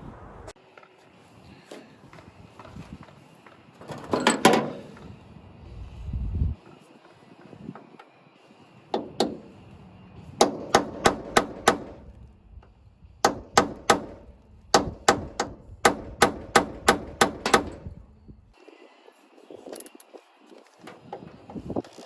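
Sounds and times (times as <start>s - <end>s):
hammer striking metal: 10.4s - 12.0s, 13.2s - 17.9s.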